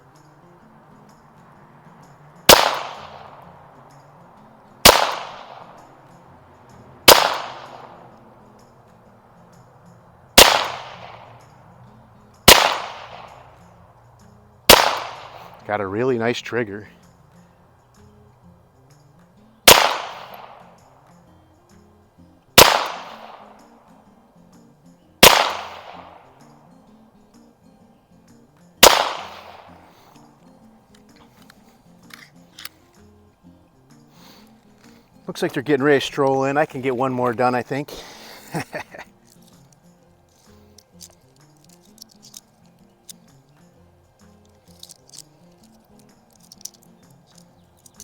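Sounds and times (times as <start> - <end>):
pistol shots: 2.5 - 3.4, 4.8 - 5.8, 7.1 - 8.0, 10.4 - 11.2, 12.5 - 13.4, 14.7 - 15.5, 19.6 - 20.8, 22.6 - 23.6, 25.2 - 26.2, 28.8 - 29.8.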